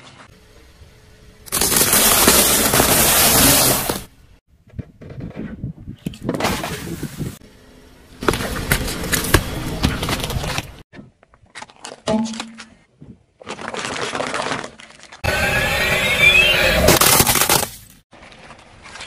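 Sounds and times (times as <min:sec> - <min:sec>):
objects crunching under car tyre: 0:01.5 - 0:04.1, 0:08.2 - 0:12.1, 0:16.8 - 0:19.0.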